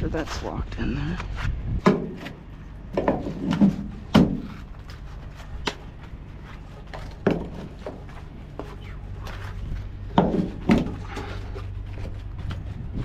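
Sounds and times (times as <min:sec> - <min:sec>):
low steady hum: 0:00.0 - 0:13.0
knocks and thumps: 0:01.8 - 0:04.6, 0:10.1 - 0:11.1.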